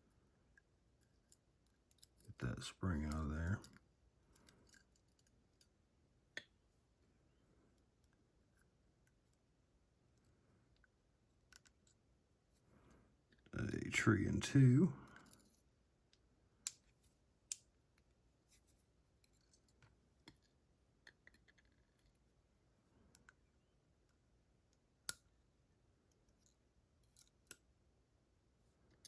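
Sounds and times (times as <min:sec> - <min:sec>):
small metallic clicks and taps: 0:00.6 - 0:02.3, 0:10.2 - 0:12.0, 0:15.1 - 0:18.6, 0:19.2 - 0:22.2, 0:24.1 - 0:25.3, 0:26.1 - 0:27.7.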